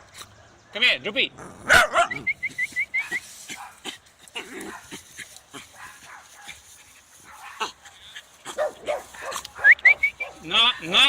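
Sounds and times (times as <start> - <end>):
dog yipping: 1.7 - 2.4, 8.5 - 10.5
scratching and scraping: 2.2 - 10.4.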